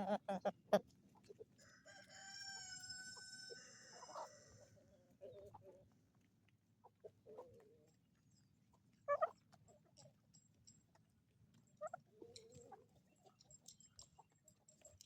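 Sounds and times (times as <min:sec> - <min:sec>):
chickens clucking: 0:00.0 - 0:05.9, 0:06.8 - 0:08.0.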